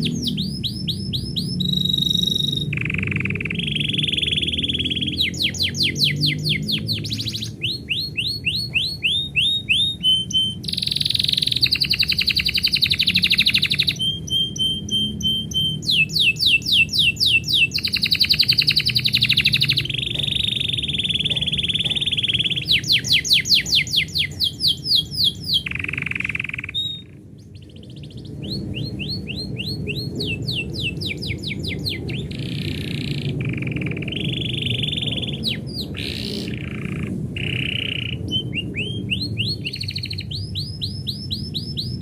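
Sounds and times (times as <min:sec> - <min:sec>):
canary singing: 0:00.0 - 0:42.0.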